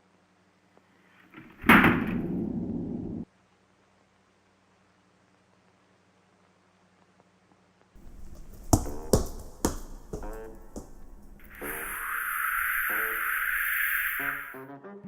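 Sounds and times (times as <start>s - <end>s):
sharp knocks: 8.0s - 12.1s
loud steady hiss: 10.8s - 14.6s.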